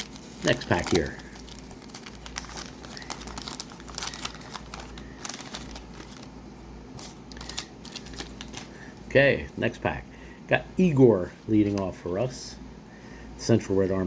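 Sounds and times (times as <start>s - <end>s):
wrapper crinkling and tearing: 0.0s - 6.3s, 7.0s - 8.8s.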